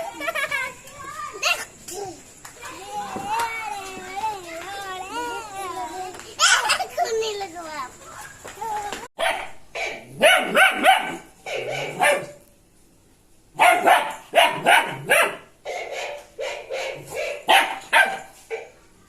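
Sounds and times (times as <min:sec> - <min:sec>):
dog barking: 0:09.2 - 0:12.4, 0:13.6 - 0:18.7.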